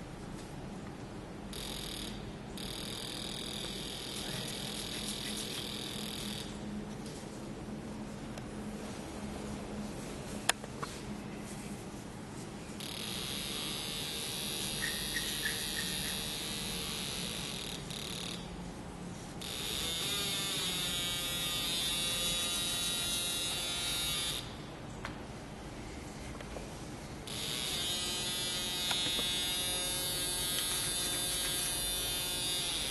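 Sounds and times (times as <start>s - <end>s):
small electric motor whirring: 12.8s - 18.5s, 19.4s - 24.5s, 27.3s - 32.9s.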